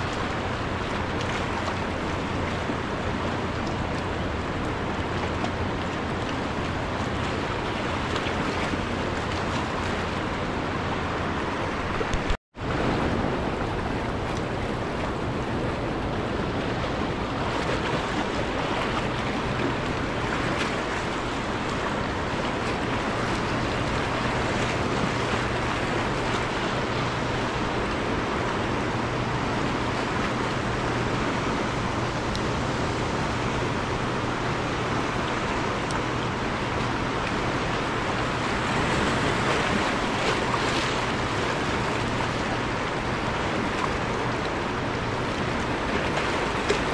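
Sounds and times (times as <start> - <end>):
fast-flowing river water: 0.0 - 46.9.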